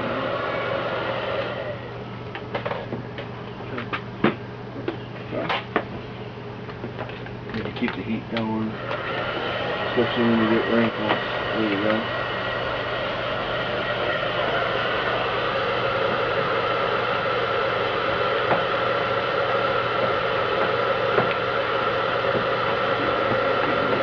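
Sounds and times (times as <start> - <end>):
heat gun blowing with whine: 0.0 - 2.0, 8.6 - 24.0.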